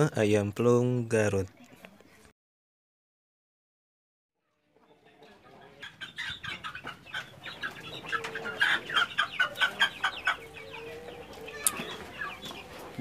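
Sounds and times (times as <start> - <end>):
chickens clucking: 4.4 - 13.0.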